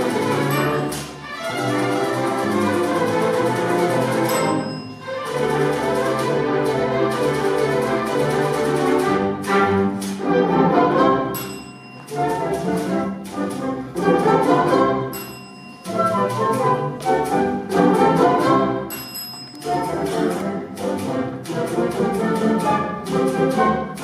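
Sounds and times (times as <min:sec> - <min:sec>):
orchestra with brass playing: 0:00.0 - 0:11.5, 0:12.1 - 0:15.2, 0:15.8 - 0:18.9, 0:19.6 - 0:24.0
typewriter bell ringing: 0:04.1 - 0:05.3, 0:11.4 - 0:12.4, 0:15.1 - 0:16.1, 0:18.9 - 0:19.9.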